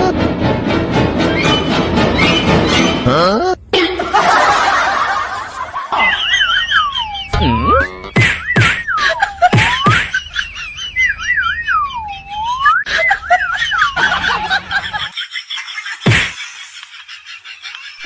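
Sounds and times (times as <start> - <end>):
whistled tune: 1.2 - 3.0, 6.7 - 10.2, 10.8 - 13.2.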